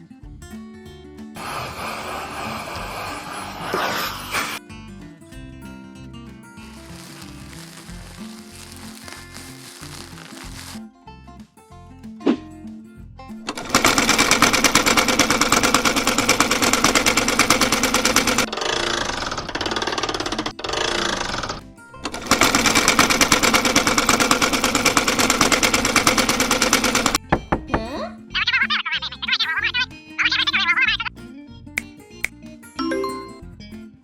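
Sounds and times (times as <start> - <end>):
background music: 1.8 - 13.5, 31.8 - 34.0
sewing machine stitching rattle: 13.5 - 27.2.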